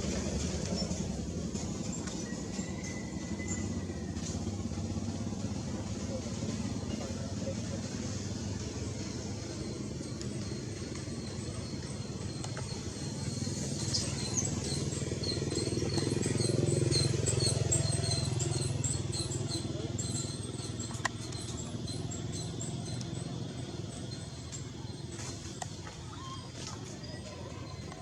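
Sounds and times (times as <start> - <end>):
vehicle engine passing: 0.0 - 25.5
rapid high-pitched chirps: 8.2 - 25.1.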